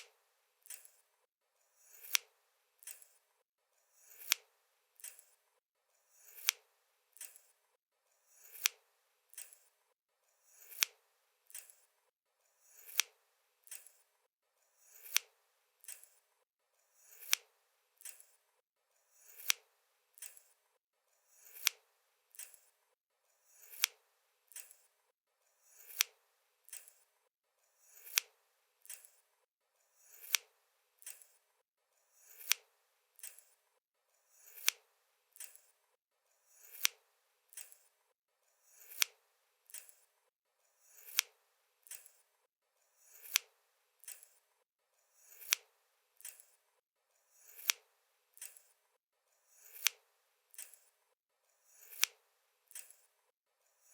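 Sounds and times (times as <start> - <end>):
scissors snipping: 0.0 - 1.0, 1.9 - 3.2, 4.1 - 5.4, 6.2 - 7.6, 8.4 - 9.7, 10.6 - 11.9, 12.8 - 14.0, 14.9 - 16.2, 17.1 - 18.4, 19.3 - 20.6, 21.4 - 22.7, 23.6 - 24.9, 25.8 - 27.0, 28.0 - 29.2, 30.1 - 31.4, 32.3 - 33.6, 34.4 - 34.8, 35.4 - 35.7, 36.6 - 37.9, 38.8 - 40.0, 41.0 - 42.2, 43.1 - 44.4, 45.3 - 46.6, 47.5 - 48.7, 49.6 - 50.9, 51.8 - 53.1.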